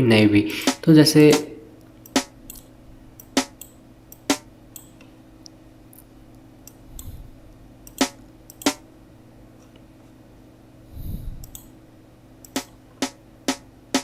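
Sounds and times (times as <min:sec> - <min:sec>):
faint steady hum: 0:00.0 - 0:14.0
computer mouse clicking: 0:02.0 - 0:05.0, 0:06.6 - 0:07.1, 0:07.8 - 0:08.8, 0:11.4 - 0:11.7.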